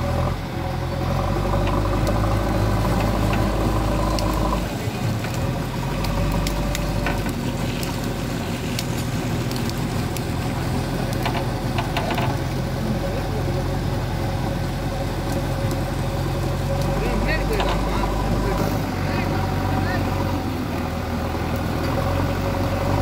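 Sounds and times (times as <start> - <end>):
diesel engine running: 0.0 - 23.0
sharp clicks and knocks: 6.0 - 8.0, 11.1 - 12.6.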